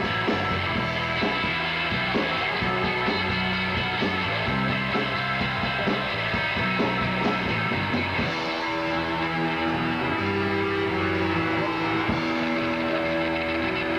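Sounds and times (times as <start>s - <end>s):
rock band playing: 0.0s - 13.9s.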